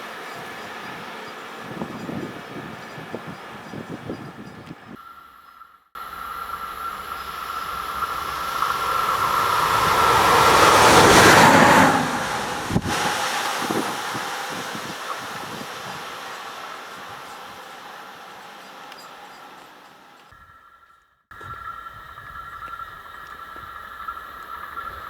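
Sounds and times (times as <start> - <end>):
train wheels rushing on rail: 0.0 - 5.0, 6.0 - 20.3
high whine dropping in pitch: 6.0 - 19.1.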